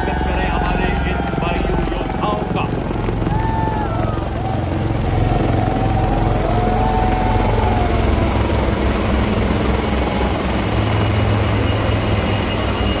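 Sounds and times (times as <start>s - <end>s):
helicopter flying over: 0.0s - 13.0s.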